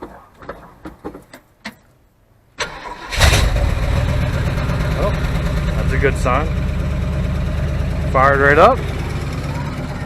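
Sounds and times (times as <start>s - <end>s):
truck engine starting and idling: 2.6s - 10.0s.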